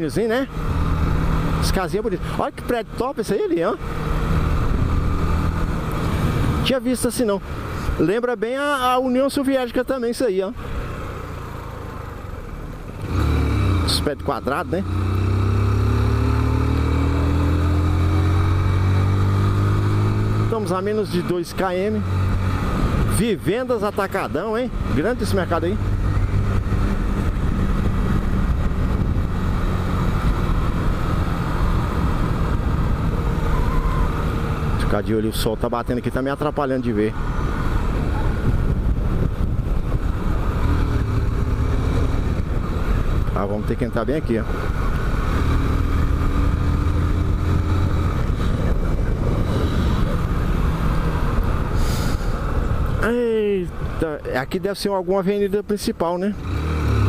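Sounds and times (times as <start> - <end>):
road and wind noise: 0.0 - 57.0
motorcycle engine running: 24.1 - 34.8.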